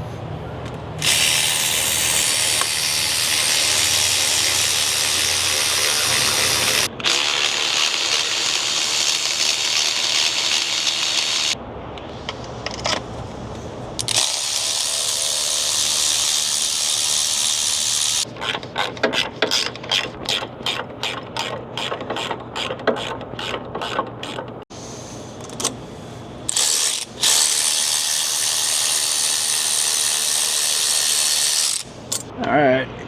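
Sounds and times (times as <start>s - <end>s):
ratchet wrench clicking: 1.0s - 11.5s, 14.0s - 18.3s, 26.5s - 32.3s.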